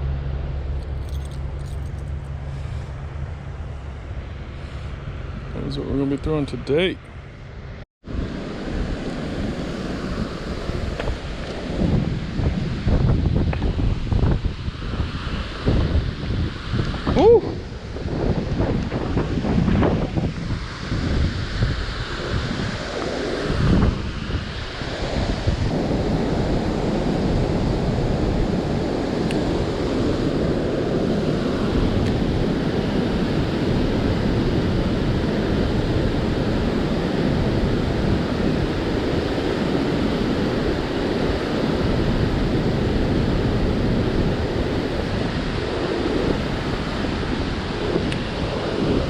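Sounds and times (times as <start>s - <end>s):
wind buffeting the microphone: 8.0s - 49.0s
choppy water around a kayak: 24.8s - 49.0s.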